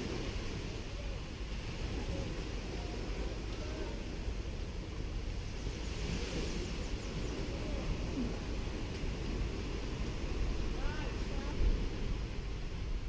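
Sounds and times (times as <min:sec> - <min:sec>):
waves washing onto beach: 0:00.0 - 0:13.0.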